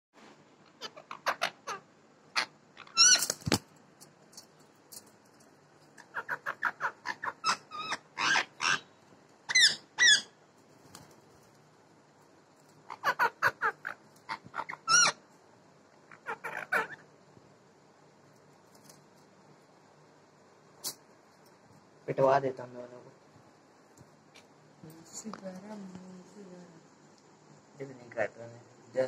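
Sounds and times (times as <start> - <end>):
parrots squawking: 0.6 - 3.4, 6.0 - 10.4, 12.8 - 15.3, 16.0 - 17.1.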